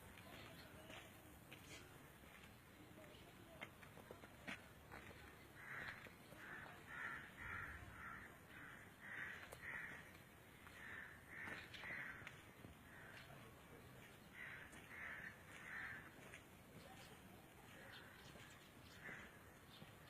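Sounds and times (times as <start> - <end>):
crow cawing: 5.0 - 16.4, 17.7 - 19.8.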